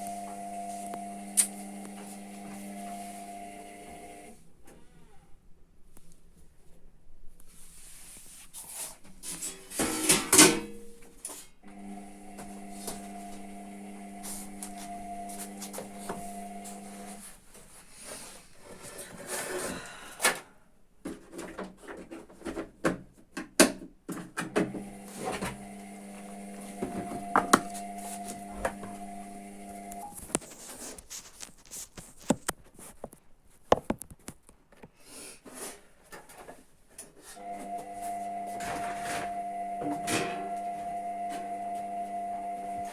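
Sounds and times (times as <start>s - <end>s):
washing machine drum motor tone: 0.0s - 4.3s, 11.6s - 17.2s, 24.5s - 30.1s, 37.4s - 42.9s.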